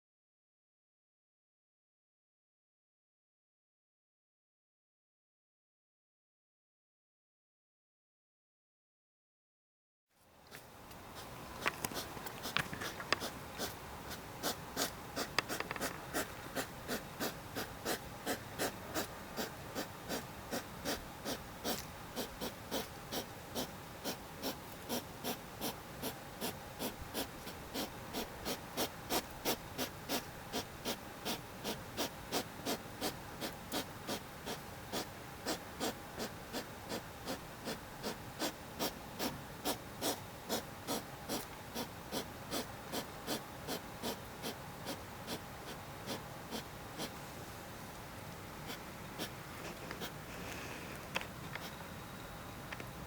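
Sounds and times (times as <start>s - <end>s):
hedgehog wheezy breathing: 11.1s - 47.2s, 48.6s - 51.8s.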